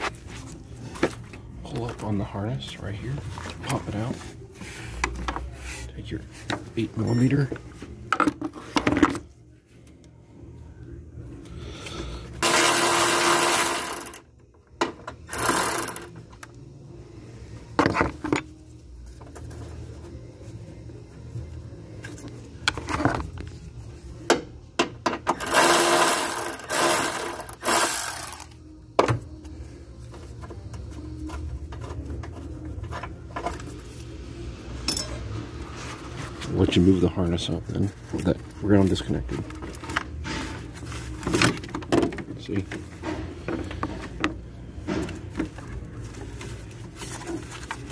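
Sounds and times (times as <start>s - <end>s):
hand ratchet clicking: 15.3s - 16.1s, 25.4s - 28.5s
metal tools clinking: 34.8s - 35.4s.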